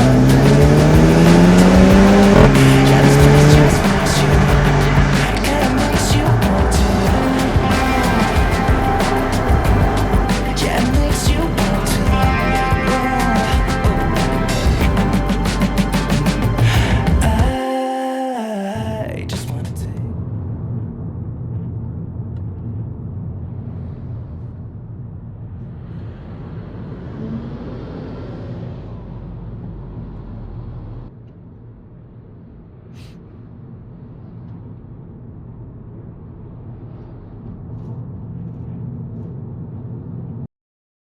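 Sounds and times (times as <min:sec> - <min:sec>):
engine and tyre road drone: 0:00.0 - 0:17.5, 0:20.4 - 0:31.2.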